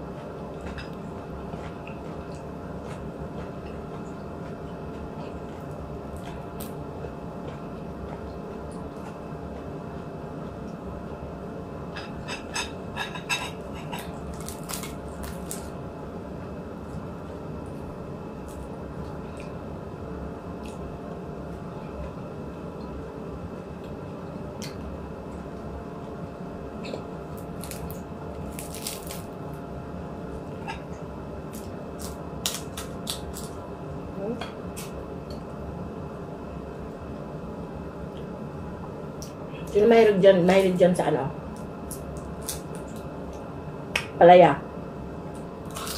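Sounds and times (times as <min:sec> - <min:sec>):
steady low hum: 0:00.0 - 0:45.9
utensils on a plate: 0:12.0 - 0:14.2.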